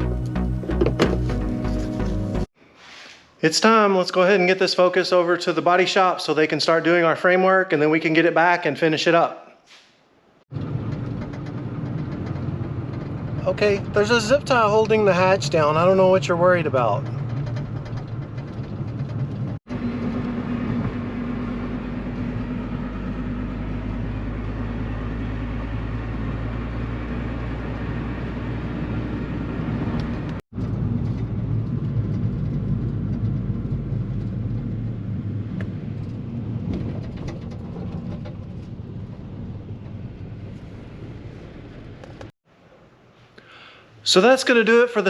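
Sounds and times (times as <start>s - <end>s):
vehicle engine hum: 0.0s - 2.5s, 10.5s - 42.3s
road noise: 9.7s - 44.0s.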